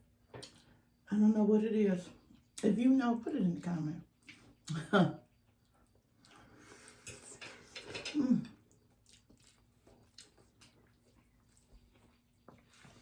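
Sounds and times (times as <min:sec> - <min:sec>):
crunching and chewing: 0:05.4 - 0:13.0.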